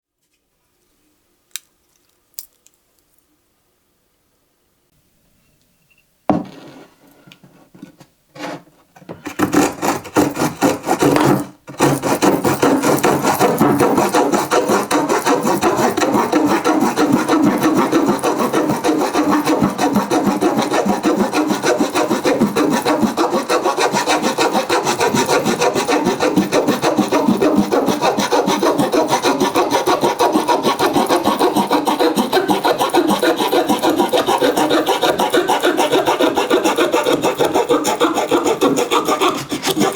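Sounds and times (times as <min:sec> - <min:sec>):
small saw blade rasping: 0:09.2 - 0:39.9.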